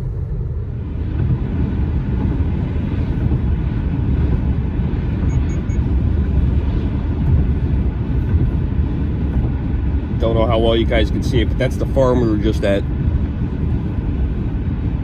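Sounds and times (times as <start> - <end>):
car road and engine rumble: 0.0 - 15.0.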